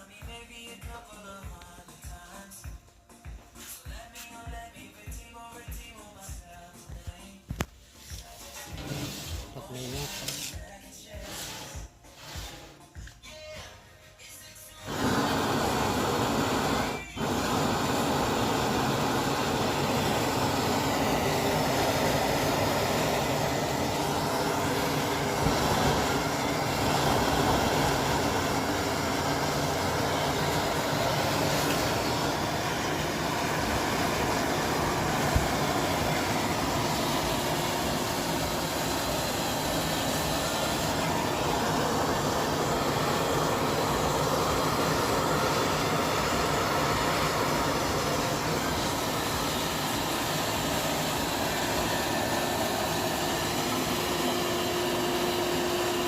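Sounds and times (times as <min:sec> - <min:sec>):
gas stove burners roaring: 0:14.8 - 0:56.0.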